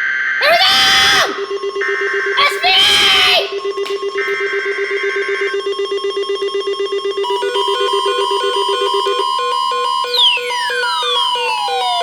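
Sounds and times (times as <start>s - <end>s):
higher stepped beeps: 1.0s - 11.7s
low pulsing beep: 1.1s - 12.0s.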